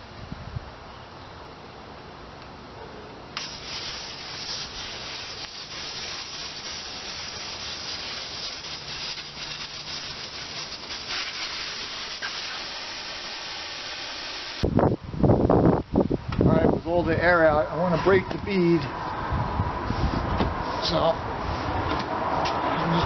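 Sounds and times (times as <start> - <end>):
air hissing out of a tire: 3.4 - 14.6, 19.8 - 21.8.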